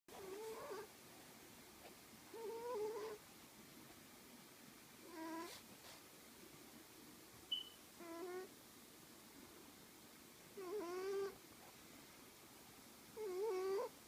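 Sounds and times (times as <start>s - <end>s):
cat snoring: 0.1s - 0.9s, 2.3s - 3.2s, 5.1s - 5.6s, 8.0s - 8.5s, 10.6s - 11.4s, 13.2s - 14.0s.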